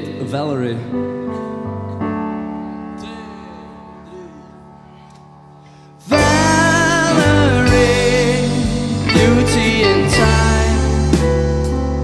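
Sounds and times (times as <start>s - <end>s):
held keyboard chord: 0.0s - 12.0s
full band playing: 6.1s - 12.0s.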